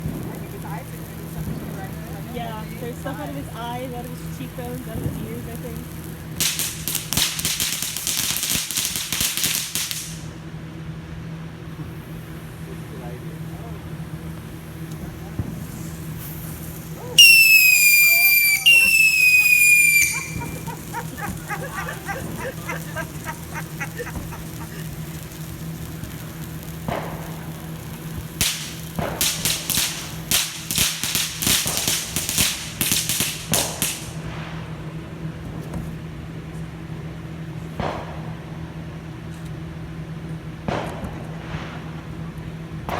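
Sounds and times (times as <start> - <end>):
firecrackers cracking: 0.0 - 10.6, 11.6 - 34.9.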